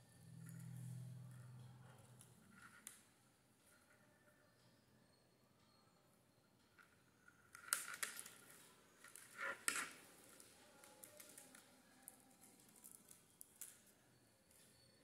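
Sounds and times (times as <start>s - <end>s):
beads and wire clicking: 7.5s - 14.9s.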